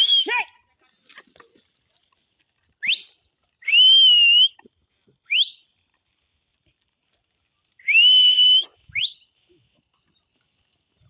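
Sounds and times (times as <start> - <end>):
person whistling: 7.9 - 9.2.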